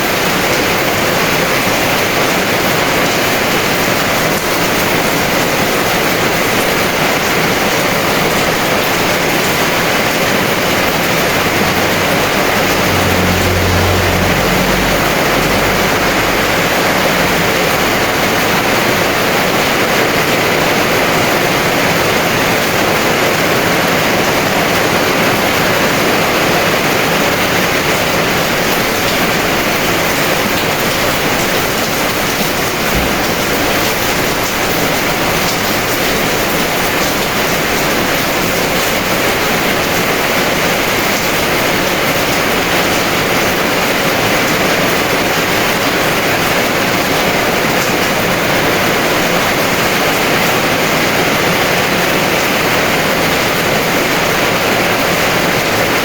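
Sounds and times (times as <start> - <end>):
heavy rain pouring: 0.0 - 56.0
low rumble: 10.0 - 19.7, 32.5 - 34.8.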